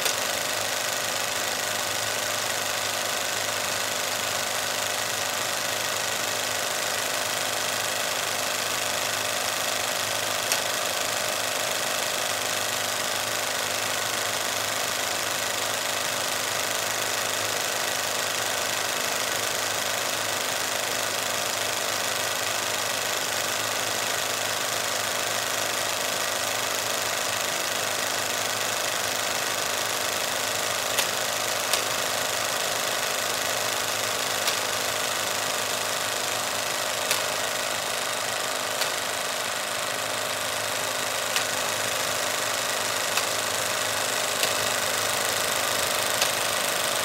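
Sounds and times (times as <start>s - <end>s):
sharp click: 0.0s - 0.4s, 10.4s - 11.2s, 30.9s - 32.5s, 33.5s - 35.0s, 36.9s - 40.0s, 41.1s - 47.0s
film projector whirring: 0.0s - 47.0s.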